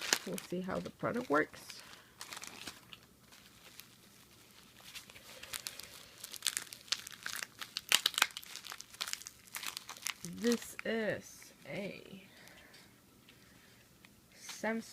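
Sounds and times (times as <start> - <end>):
packaging crinkling and tearing: 0.0 - 11.0.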